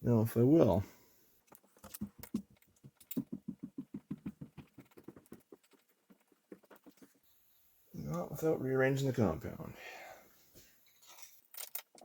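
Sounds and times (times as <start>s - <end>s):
metal parts clicking and tapping: 1.5s - 3.3s, 10.9s - 12.0s.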